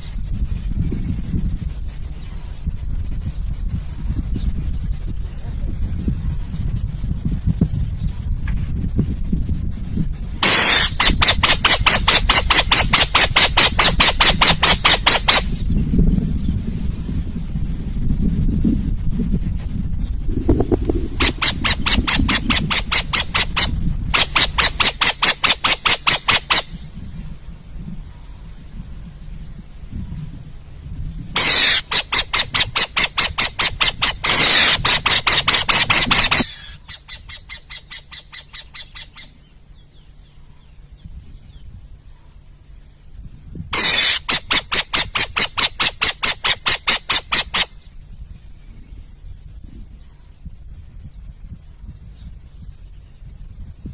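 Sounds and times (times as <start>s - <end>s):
owl calling harsh notes: 10.4s - 15.7s, 20.6s - 26.9s, 31.4s - 39.4s, 43.7s - 47.9s
low rumble: 15.4s - 23.0s.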